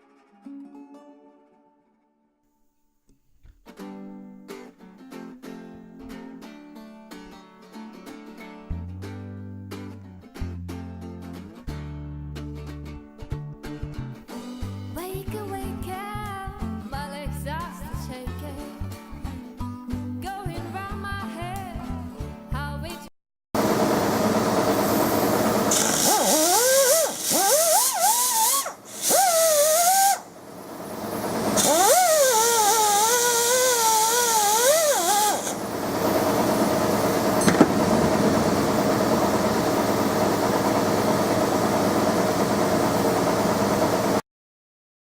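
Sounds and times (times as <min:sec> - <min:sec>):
power tool motor running: 0:23.6 - 0:44.2.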